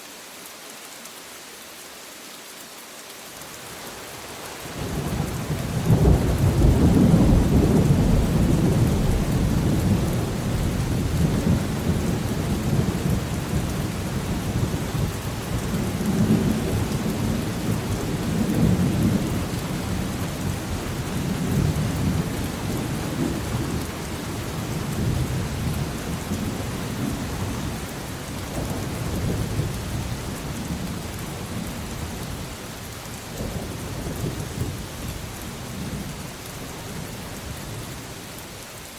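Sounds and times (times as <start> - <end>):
steady rain: 0.0 - 38.9
rolling thunder rumble: 5.2 - 27.8.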